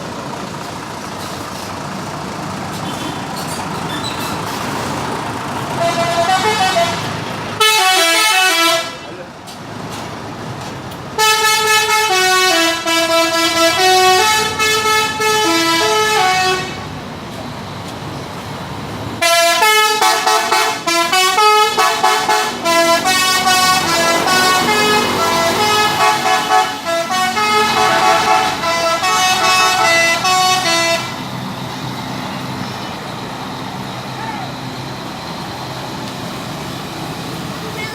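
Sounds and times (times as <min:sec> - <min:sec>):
vehicle noise: 0:00.0 - 0:37.9
bus air horns playing melodies: 0:02.7 - 0:03.4, 0:05.6 - 0:09.1, 0:11.2 - 0:16.9, 0:19.2 - 0:31.3.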